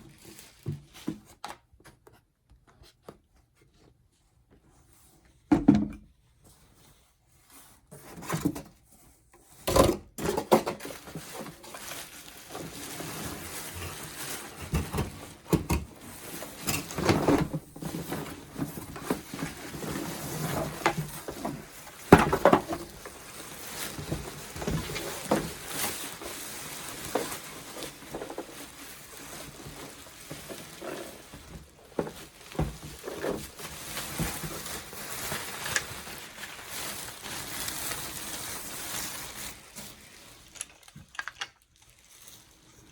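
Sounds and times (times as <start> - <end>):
plastic parts clattering: 9.7 - 42.5
packaging rustling: 10.2 - 42.9.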